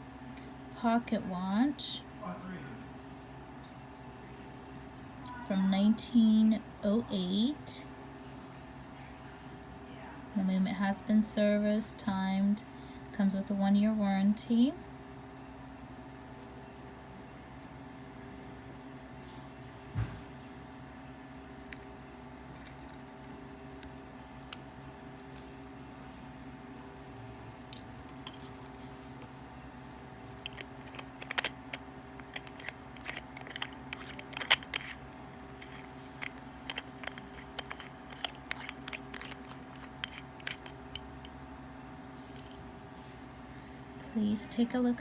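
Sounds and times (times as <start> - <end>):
low room hum: 0.0 - 45.0
pocket watch metallic clicks: 19.8 - 43.5.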